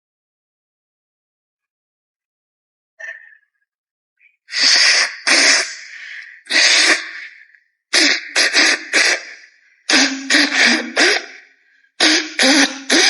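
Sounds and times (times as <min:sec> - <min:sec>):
woman blowing her nose: 0:04.5 - 0:13.0
woman sniffing: 0:04.5 - 0:13.0.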